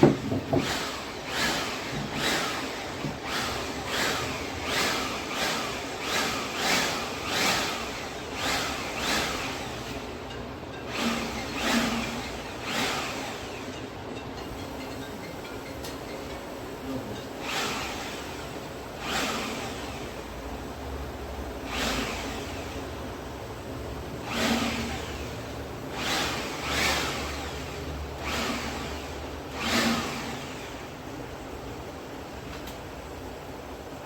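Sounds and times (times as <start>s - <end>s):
electric blower humming: 0.0s - 10.0s.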